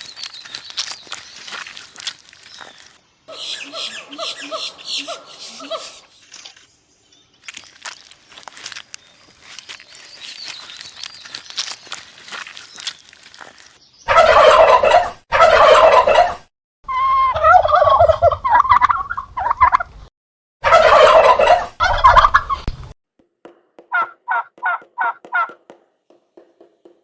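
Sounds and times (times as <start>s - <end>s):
farm fowl calling: 3.3s - 6.1s, 14.1s - 19.9s, 20.6s - 22.6s.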